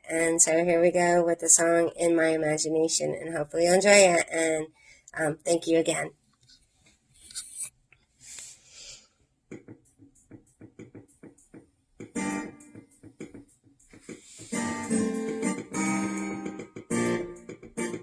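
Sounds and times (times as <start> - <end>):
guitar plucked notes: 12.0 - 13.4, 14.4 - 18.0
guitar strummed chords: 12.1 - 12.8, 14.3 - 18.0.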